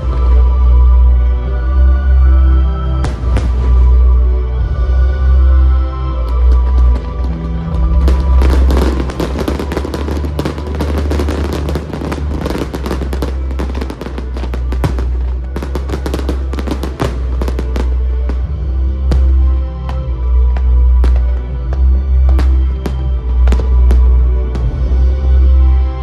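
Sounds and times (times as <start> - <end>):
music with low bass: 0.0 - 26.0
fireworks crackling: 3.0 - 4.0, 6.2 - 25.0.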